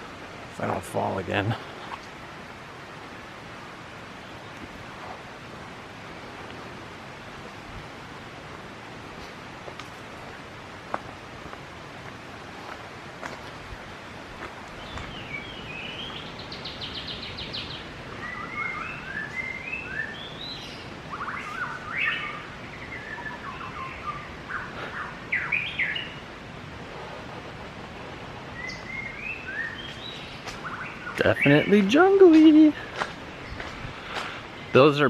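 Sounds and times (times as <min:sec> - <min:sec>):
songbirds singing: 0:00.6 - 0:04.9, 0:13.5 - 0:26.7, 0:28.4 - 0:35.0.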